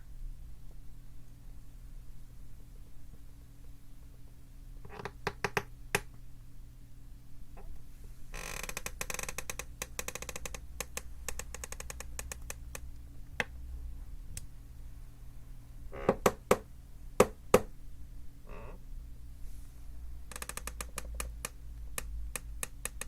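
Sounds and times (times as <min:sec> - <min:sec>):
chair creaking: 0:08.4 - 0:12.6, 0:16.0 - 0:16.4, 0:20.3 - 0:23.0.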